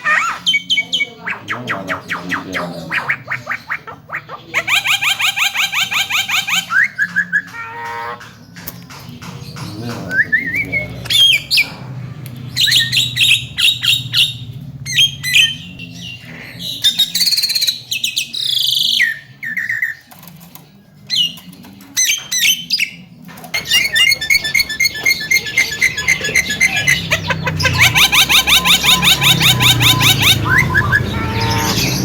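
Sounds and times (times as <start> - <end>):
myna calling: 23.6 - 32.0.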